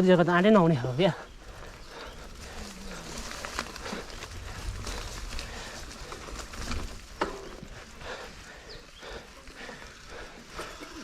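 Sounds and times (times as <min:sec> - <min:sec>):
bike knocks and rattles: 0:03.5 - 0:07.8.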